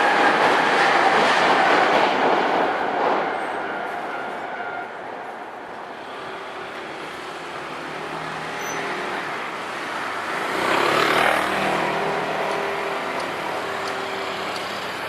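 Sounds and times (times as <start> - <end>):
cars passing: 5.9 - 15.0.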